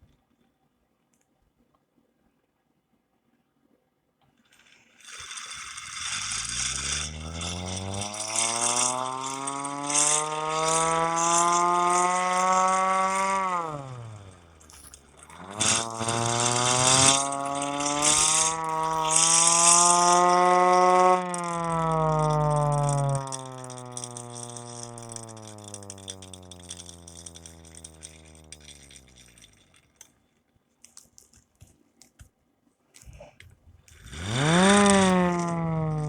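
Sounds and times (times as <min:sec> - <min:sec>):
clattering rattle of crank mechanism: 0:04.5 - 0:31.8, 0:33.8 - 0:36.0
hand-crank siren wailing: 0:06.7 - 0:29.5, 0:34.2 - 0:36.0.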